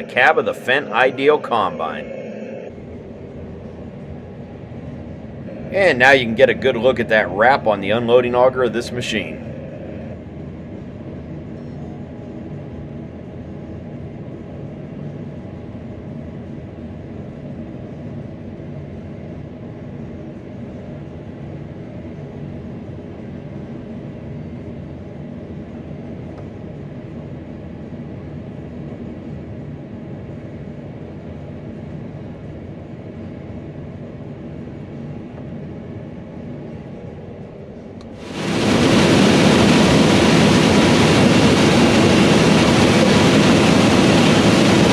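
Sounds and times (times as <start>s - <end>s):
loud machine noise: 0.0s - 3.0s, 5.5s - 10.2s, 38.2s - 44.9s
muffled combine harvester drone: 0.0s - 10.5s, 38.2s - 44.9s.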